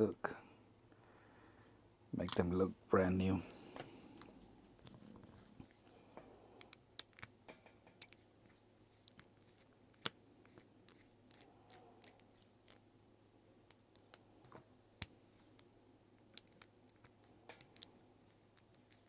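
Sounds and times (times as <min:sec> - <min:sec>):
small watch parts clicking: 0:16.3 - 0:17.9.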